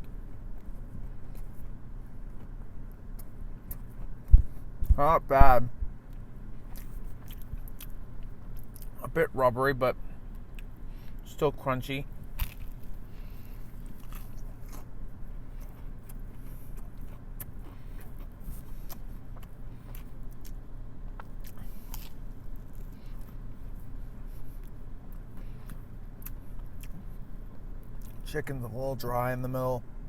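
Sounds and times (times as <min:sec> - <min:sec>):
steady low hum: 0:00.0 - 0:30.0
person chewing crunchy food: 0:00.5 - 0:04.7, 0:06.6 - 0:09.0, 0:12.2 - 0:28.2.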